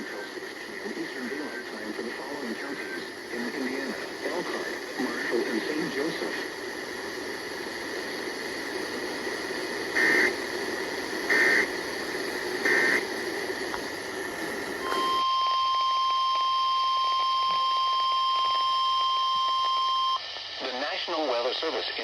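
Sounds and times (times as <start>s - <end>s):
radio static hiss: 0.0s - 15.2s, 17.2s - 22.0s
loud steady warning alarm tone: 10.0s - 10.4s, 11.3s - 11.7s, 12.6s - 13.0s, 14.8s - 20.2s
digital data tone bursts: 12.6s - 13.0s.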